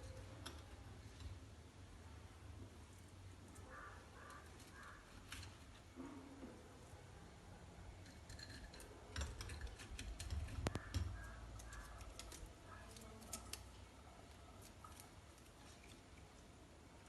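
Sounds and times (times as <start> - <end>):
light clicks and taps: 8.0 - 13.8.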